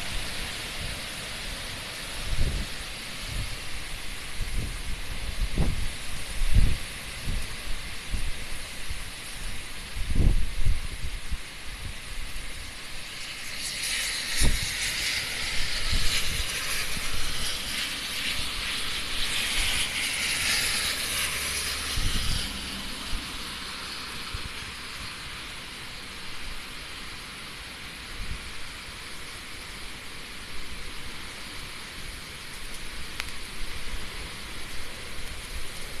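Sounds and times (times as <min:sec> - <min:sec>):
wind-driven rain hissing: 0:00.0 - 0:36.0
wind buffeting microphone: 0:02.2 - 0:12.6, 0:13.9 - 0:20.2, 0:20.8 - 0:23.3.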